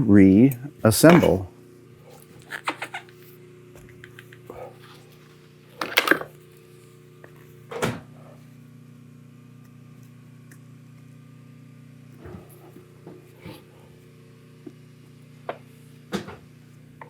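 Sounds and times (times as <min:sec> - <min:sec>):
steady low hum: 0:00.0 - 0:17.0
parts being handled: 0:02.2 - 0:06.4.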